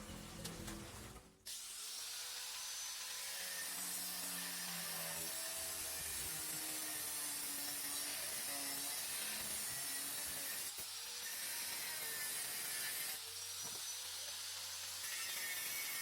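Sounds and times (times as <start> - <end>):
wood being cut: 1.5 - 16.0.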